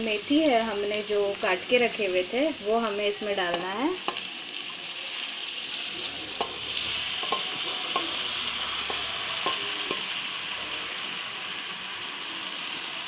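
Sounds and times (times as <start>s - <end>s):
potatoes sizzling in oil: 0.0s - 13.0s.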